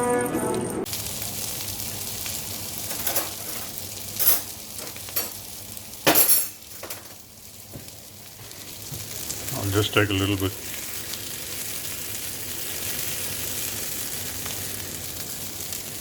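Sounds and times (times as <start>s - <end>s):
food sizzling in a frying pan: 0.9s - 16.0s
utensil scraping and clinking on pan: 2.9s - 5.4s.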